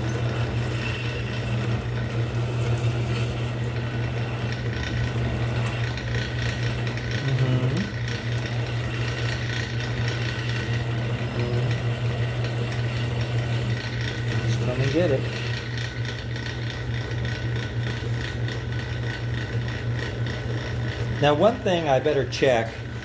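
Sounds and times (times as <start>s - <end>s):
cutting tool scraping metal: 0.0s - 16.3s
lathe motor hum: 0.0s - 23.0s.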